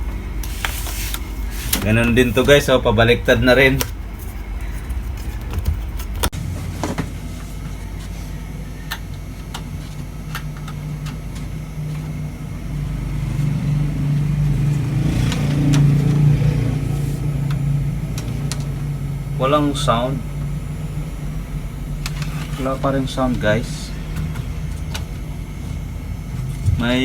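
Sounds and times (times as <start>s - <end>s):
low electrical hum: 0.0s - 27.0s.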